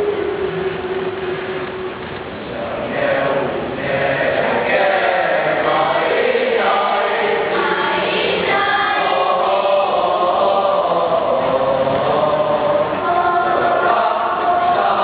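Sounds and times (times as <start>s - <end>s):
choir singing: 0.0s - 2.0s, 2.6s - 15.0s.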